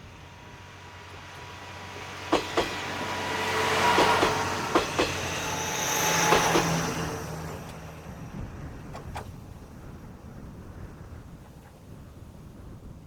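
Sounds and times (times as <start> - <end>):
train running noise: 0.0 - 12.8
train wheels clacking over rail joint: 1.1 - 8.0, 8.8 - 9.4.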